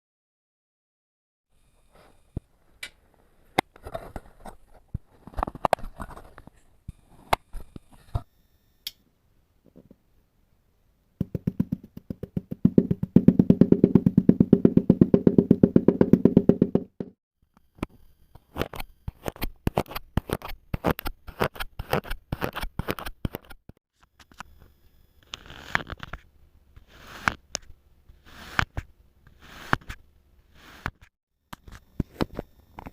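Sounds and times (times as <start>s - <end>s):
knife cutting kinetic sand: 18.4s - 23.6s, 25.2s - 26.2s, 26.8s - 32.4s.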